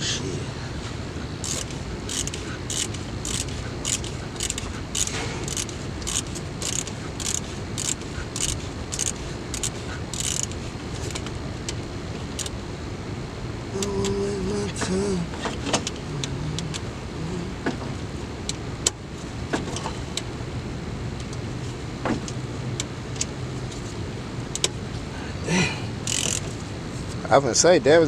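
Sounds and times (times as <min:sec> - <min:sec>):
ratchet wrench clicking: 0:01.4 - 0:12.6, 0:26.0 - 0:26.6.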